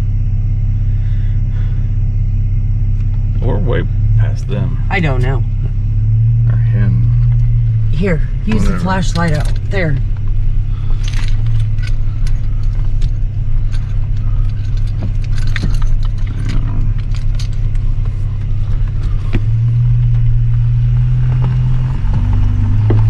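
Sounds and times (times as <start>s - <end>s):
car engine and road drone: 0.0s - 23.0s
jingling rattles: 8.0s - 20.3s.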